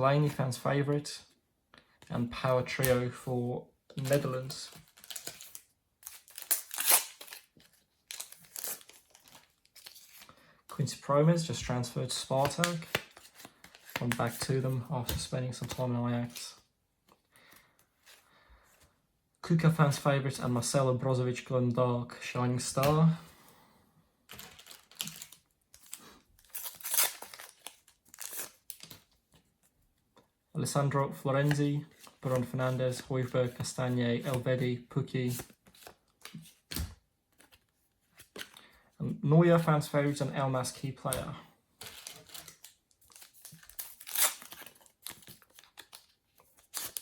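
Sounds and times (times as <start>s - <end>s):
foil packet tearing and crinkling: 4.9s - 10.2s, 24.3s - 29.0s, 41.9s - 47.0s
wrapper being torn open: 4.9s - 10.2s, 24.3s - 29.0s, 41.9s - 47.0s
wrapper rustling: 24.3s - 28.9s.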